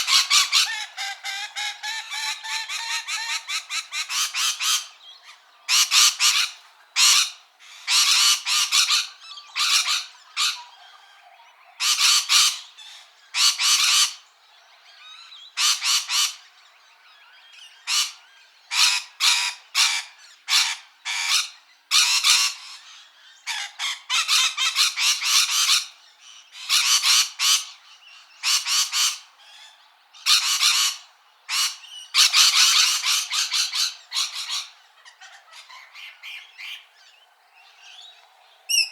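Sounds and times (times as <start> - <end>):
parrot squawking: 0.0 - 4.8.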